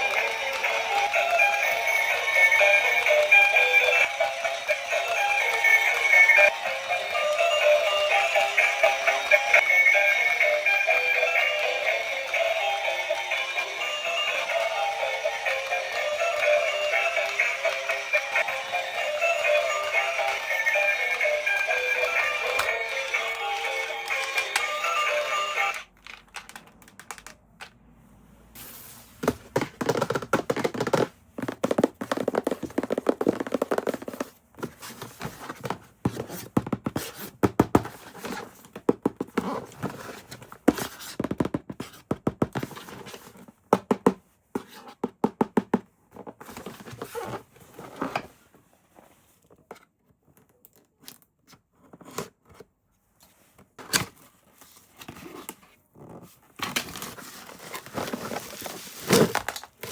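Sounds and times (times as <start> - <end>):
knocks and taps of toys: 29.2 - 34.4, 35.6 - 38.0, 38.7 - 39.5, 40.7 - 42.7, 43.7 - 46.2.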